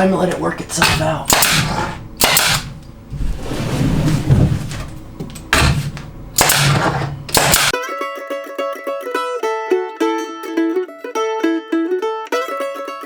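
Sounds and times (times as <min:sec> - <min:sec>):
handling noise: 0:00.3 - 0:07.7
nail gun firing into wood: 0:00.8 - 0:02.8, 0:05.5 - 0:07.8
mandolin music: 0:07.7 - 0:13.0.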